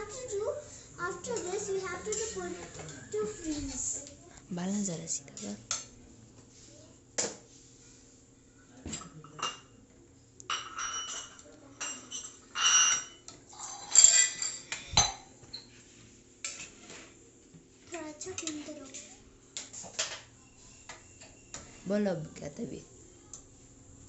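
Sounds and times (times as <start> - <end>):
metal utensils and pots clanking: 1.0 - 4.0, 10.5 - 15.8.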